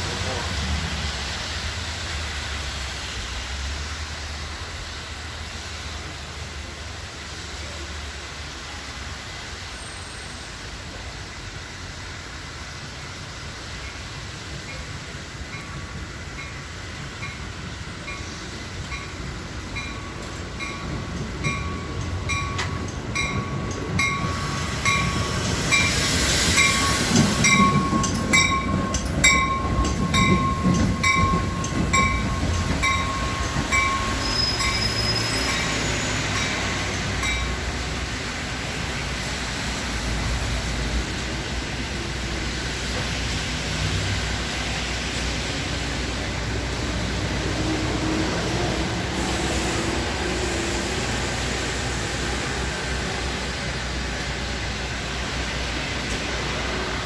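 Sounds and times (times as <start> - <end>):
train rumble and wheel clatter: 0.0 - 57.0
high brake squeal: 9.7 - 12.5, 33.0 - 36.7, 49.2 - 51.5
bell ringing: 26.6 - 37.6.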